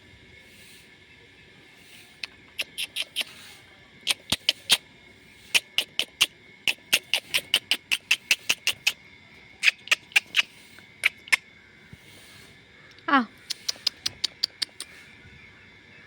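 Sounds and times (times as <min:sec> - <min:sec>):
small animal squeaking: 0:02.2 - 0:04.8, 0:05.4 - 0:09.0, 0:09.6 - 0:11.4, 0:13.0 - 0:15.2.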